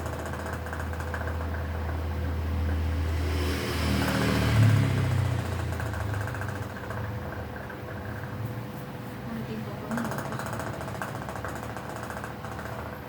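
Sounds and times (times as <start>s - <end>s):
vehicle engine passing by: 1.2s - 10.6s.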